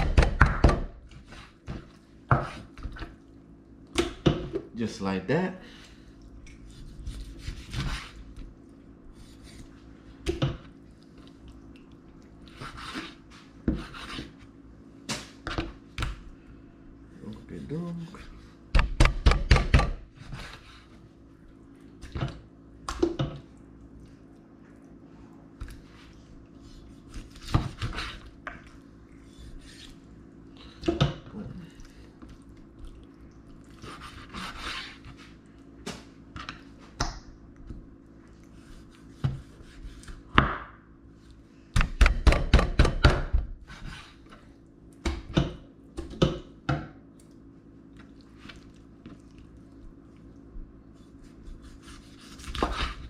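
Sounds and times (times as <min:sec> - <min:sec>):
knife knocking and scraping on board: 0:12.6 - 0:14.3
knife chopping: 0:12.6 - 0:14.4, 0:51.4 - 0:53.0.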